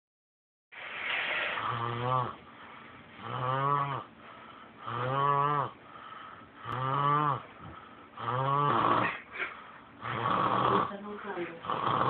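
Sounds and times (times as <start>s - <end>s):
person snoring: 1.3s - 2.4s, 3.2s - 4.1s, 4.8s - 5.8s, 6.6s - 7.5s, 8.2s - 11.0s, 11.6s - 12.0s.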